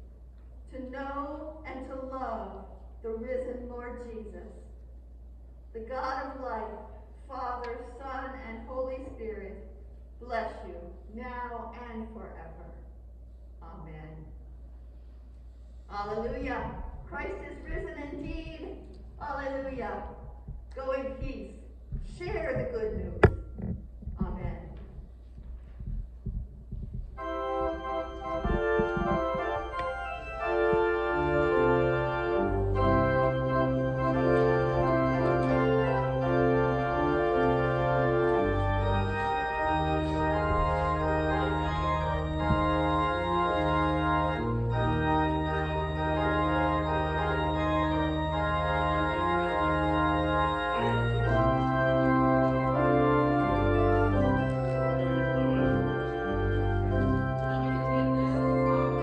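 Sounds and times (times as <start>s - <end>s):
organ bass pedal notes: 16.0s - 59.0s
church organ sustained chords: 27.1s - 59.0s.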